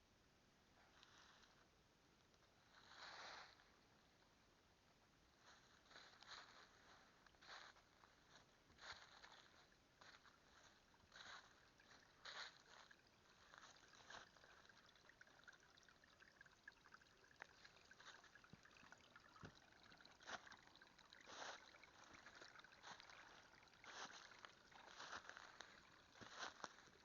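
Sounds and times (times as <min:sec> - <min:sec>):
brook trickling and splashing: 0:05.4 - 0:27.0.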